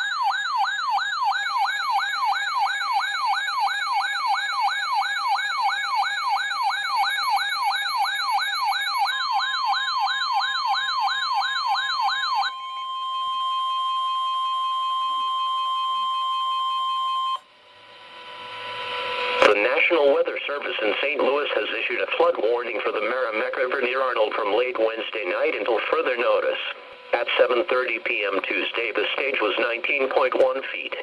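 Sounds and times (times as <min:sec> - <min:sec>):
electronic siren yelping: 0:00.0 - 0:17.5
steady alarm tone: 0:00.0 - 0:28.2.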